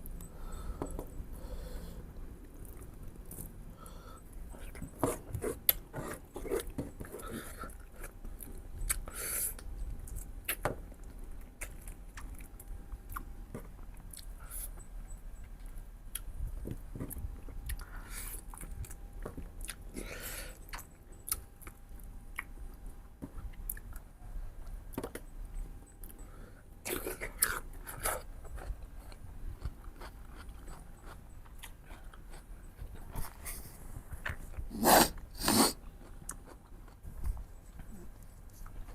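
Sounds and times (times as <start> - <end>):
person chewing meat: 4.4 - 14.8, 17.1 - 22.8, 26.8 - 38.9.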